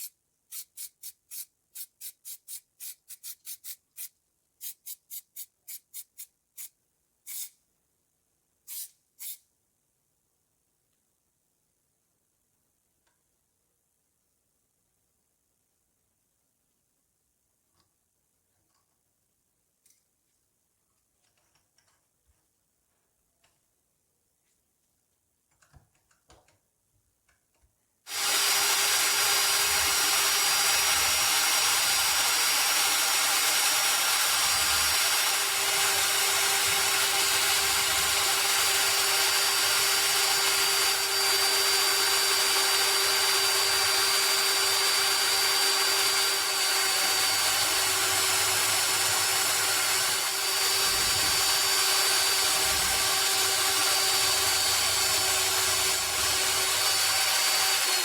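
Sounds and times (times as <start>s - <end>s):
power tool running: 28.1s - 58.0s.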